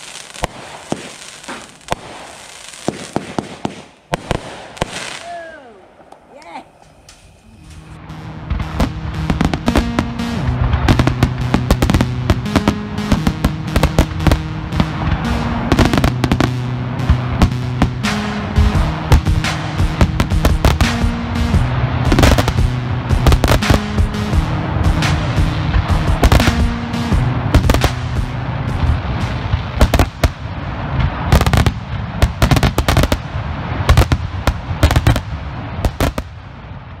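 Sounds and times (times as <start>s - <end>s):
fireworks crackling reports: 0.0s - 37.0s
background music: 7.5s - 31.8s.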